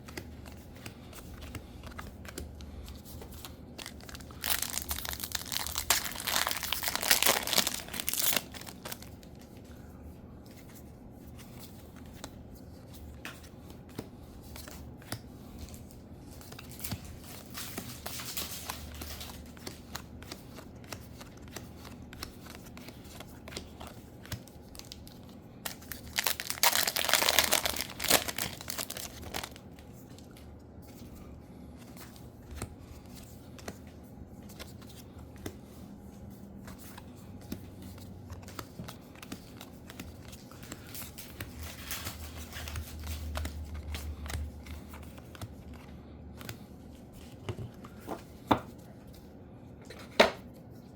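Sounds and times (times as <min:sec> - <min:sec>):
cards rustling and clicking: 0:00.0 - 0:09.8, 0:10.4 - 0:50.6
wrappers tearing and crinkling: 0:03.8 - 0:09.2, 0:25.0 - 0:29.6.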